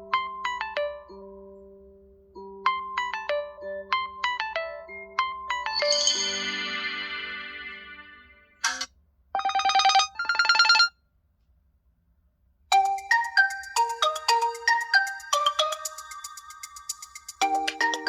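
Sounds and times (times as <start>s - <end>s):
bell-like melody: 3.0s - 8.9s, 12.7s - 18.0s
phone ringtone: 3.0s - 11.0s, 12.8s - 16.8s
trilling phone rings: 5.8s - 11.0s.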